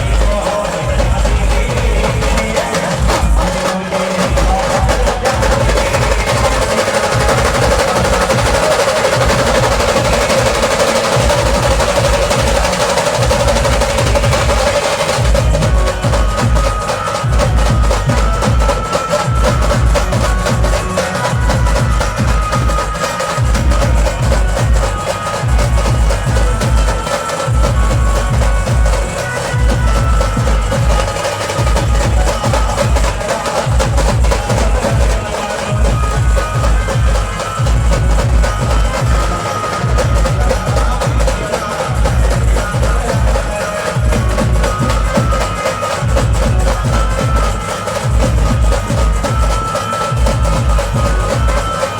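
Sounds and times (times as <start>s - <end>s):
clattering percussion: 0.0s - 51.9s
procession band playing: 0.0s - 51.9s
rolling drumming: 0.0s - 51.9s.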